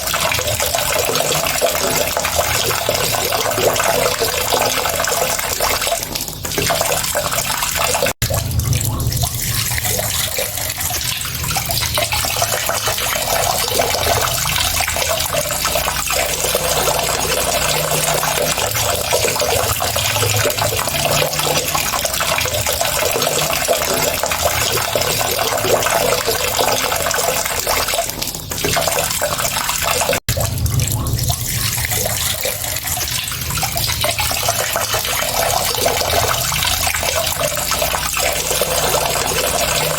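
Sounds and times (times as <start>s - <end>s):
running water pouring: 0.0s - 39.9s.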